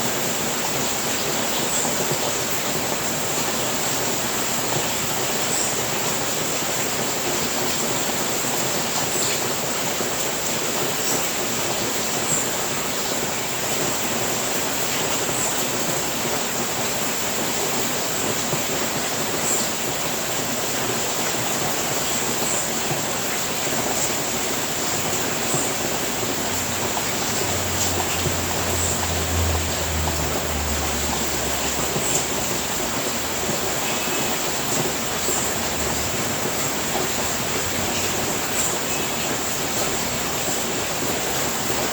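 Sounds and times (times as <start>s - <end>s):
steady rain falling: 0.0s - 41.9s.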